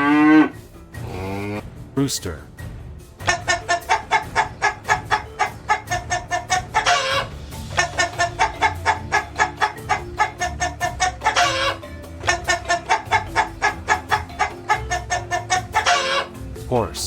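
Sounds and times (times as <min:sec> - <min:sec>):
chicken squawk: 0:03.2 - 0:16.4
chickens clucking: 0:03.2 - 0:16.6.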